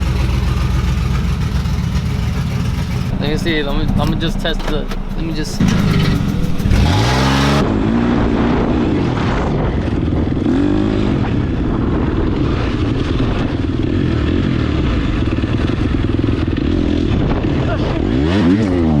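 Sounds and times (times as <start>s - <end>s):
truck engine revving and idling: 0.0s - 9.4s.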